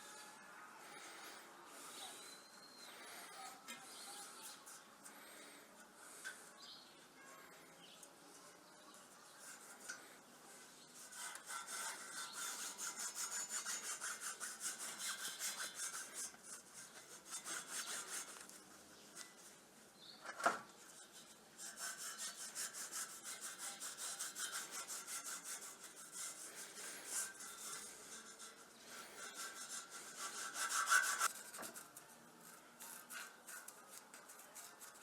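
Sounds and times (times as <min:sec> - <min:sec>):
hand rubbing on iron grid: 0:09.1 - 0:19.6, 0:20.8 - 0:35.0.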